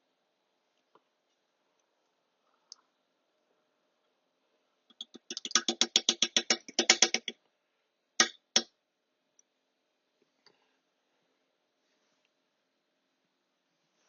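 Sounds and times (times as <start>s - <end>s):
rapid metallic clicking: 4.9s - 7.4s
sharp clicks: 4.9s - 7.4s.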